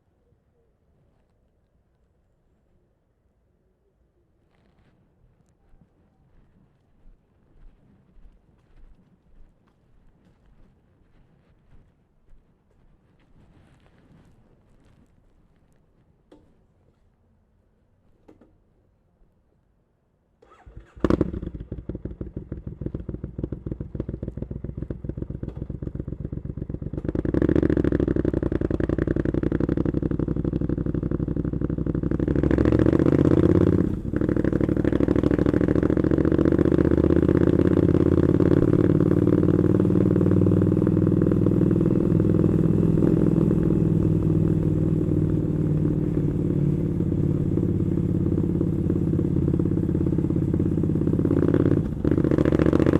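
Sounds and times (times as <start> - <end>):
motorcycle engine starting and revving: 20.4 - 52.9.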